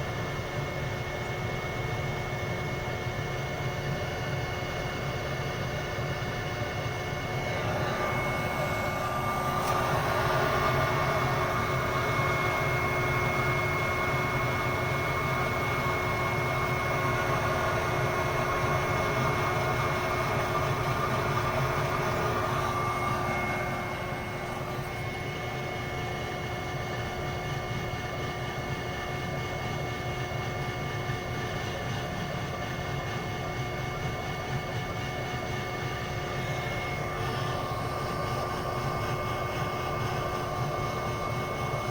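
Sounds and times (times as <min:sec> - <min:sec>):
boiler vibrating hum: 0:00.0 - 0:41.9.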